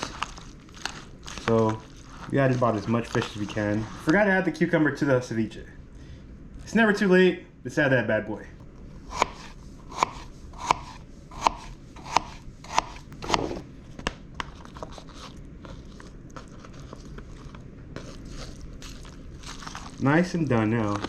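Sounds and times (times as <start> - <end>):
knife chopping on cutting board: 9.1 - 13.6.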